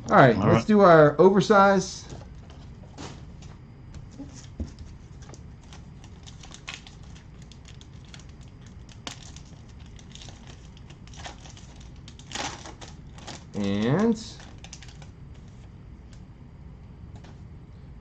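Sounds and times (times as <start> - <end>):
wrapper crinkling: 5.2 - 15.7.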